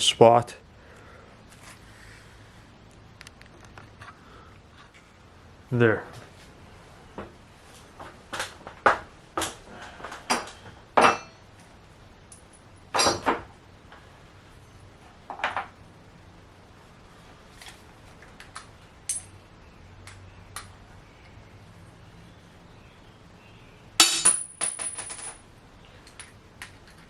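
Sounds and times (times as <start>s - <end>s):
metal hardware clinking: 19.1s - 19.4s, 24.0s - 25.4s.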